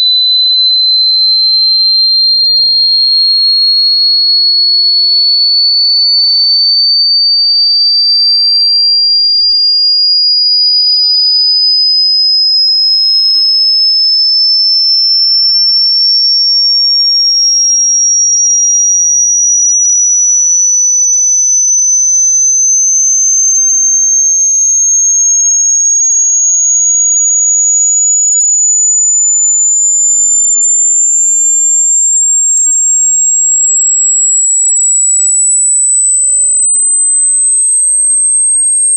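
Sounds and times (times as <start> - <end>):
rising high-pitched test tone: 12.2 - 38.9.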